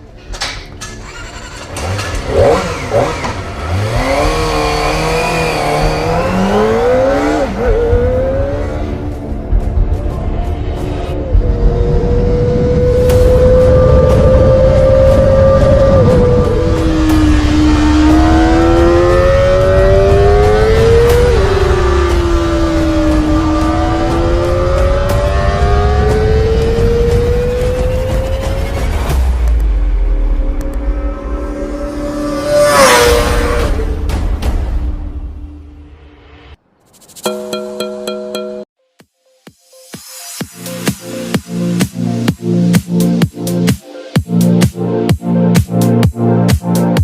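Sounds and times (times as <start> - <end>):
motorcycle engine revving: 0.8 - 9.3, 11.3 - 29.2, 31.1 - 34.2.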